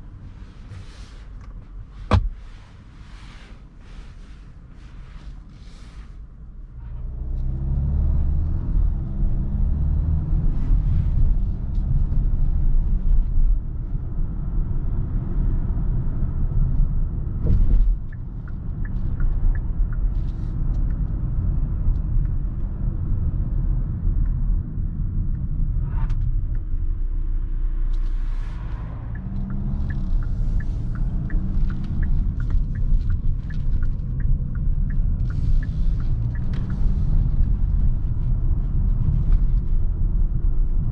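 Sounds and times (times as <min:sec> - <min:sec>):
car engine and road noise: 0:00.0 - 0:40.9
light regular ticking: 0:29.1 - 0:38.0.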